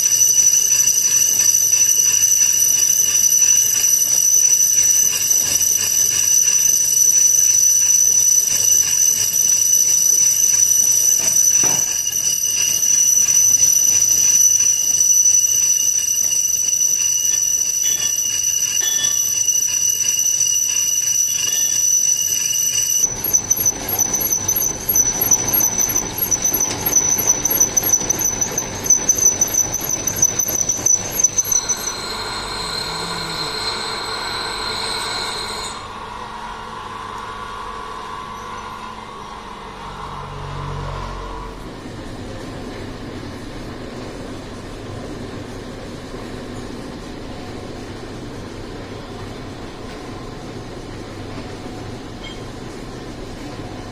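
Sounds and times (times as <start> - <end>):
machinery metallic squeal: 0.0 - 36.4, 38.0 - 41.6
pulsing squeal: 0.0 - 36.7.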